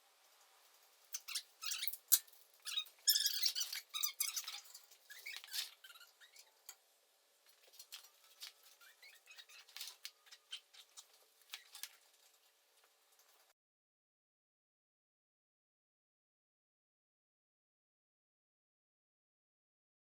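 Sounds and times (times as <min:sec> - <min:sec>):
brief squeaks: 0:01.2 - 0:06.6, 0:07.7 - 0:12.0.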